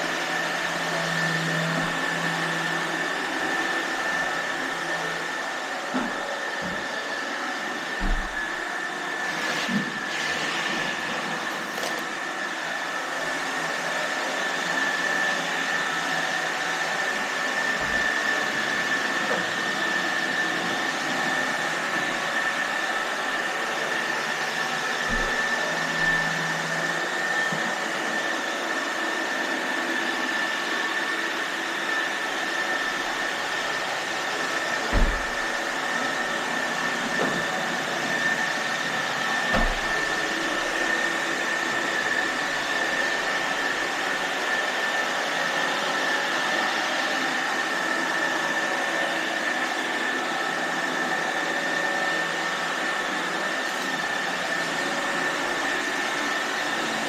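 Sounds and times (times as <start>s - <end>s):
robot vacuum whirring: 0.0s - 57.0s.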